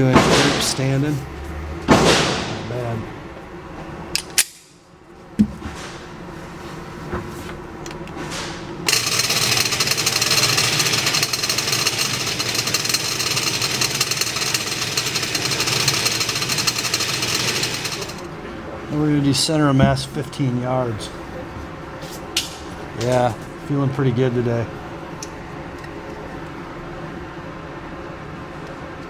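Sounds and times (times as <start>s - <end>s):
sharp knocks: 0.0s - 1.1s, 1.8s - 2.8s
target carrier mechanical rattle: 8.8s - 18.3s.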